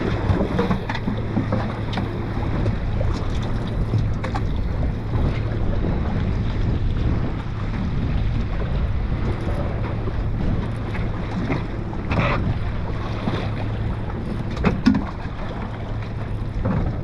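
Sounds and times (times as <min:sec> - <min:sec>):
boat engine hum: 0:00.0 - 0:17.0
water noise: 0:00.0 - 0:17.0
wind buffeting microphone: 0:00.0 - 0:17.0.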